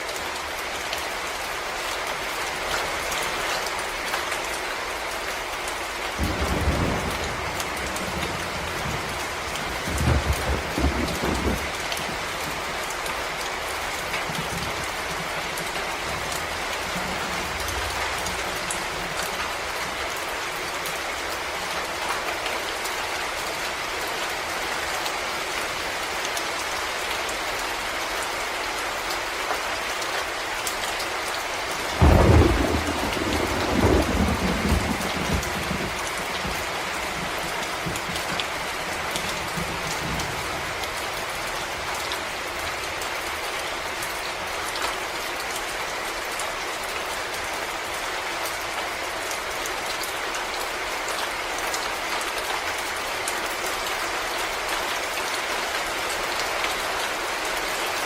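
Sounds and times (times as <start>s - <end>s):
rain falling on leaves: 0.0s - 58.0s
thunder rumbling: 6.2s - 19.7s, 31.7s - 42.7s.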